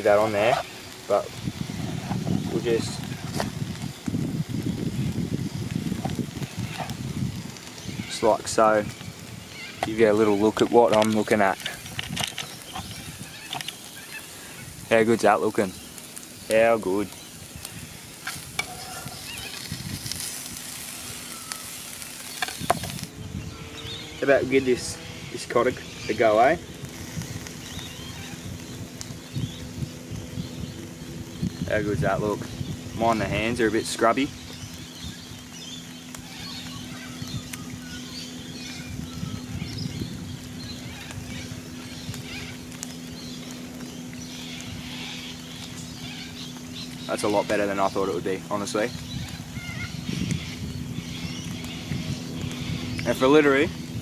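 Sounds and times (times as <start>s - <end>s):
fish sizzling in a frying pan: 0.0s - 23.2s, 24.0s - 53.6s
steady low hum: 0.0s - 54.0s
bird chirps: 27.4s - 54.0s.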